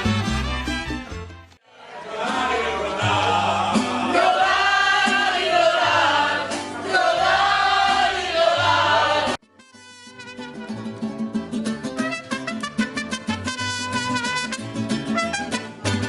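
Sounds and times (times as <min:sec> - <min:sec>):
voices singing over bass line: 0:01.8 - 0:09.4
plucked string music: 0:09.6 - 0:16.0.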